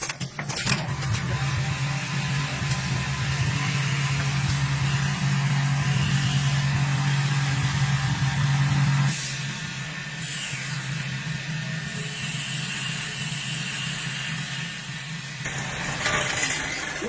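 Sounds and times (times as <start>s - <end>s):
machine humming: 15.4s - 17.0s.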